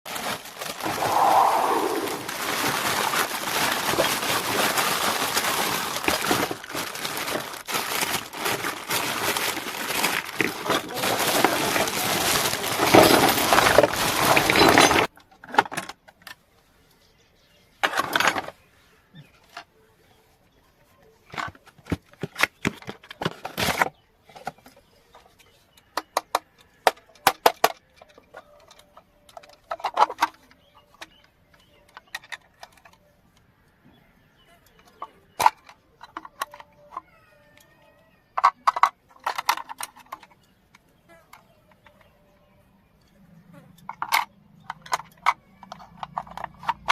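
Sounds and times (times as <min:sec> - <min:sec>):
packaging crinkling and rustling: 0:00.1 - 0:15.1.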